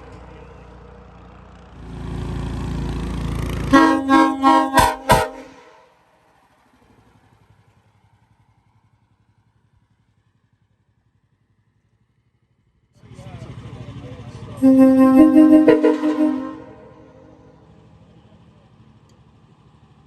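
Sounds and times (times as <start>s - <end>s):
train air horn blasts: 3.6s - 5.8s, 14.6s - 17.6s.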